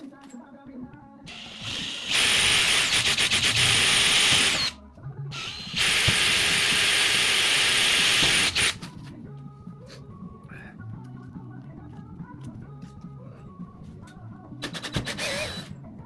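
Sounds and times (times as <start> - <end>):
power drill boring through metal: 1.3 - 4.7, 5.3 - 8.8, 15.1 - 15.6.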